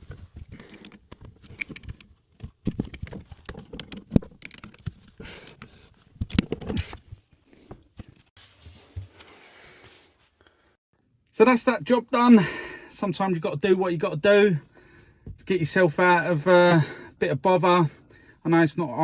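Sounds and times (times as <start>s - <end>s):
tools and parts clicking and rattling: 0.0s - 7.3s.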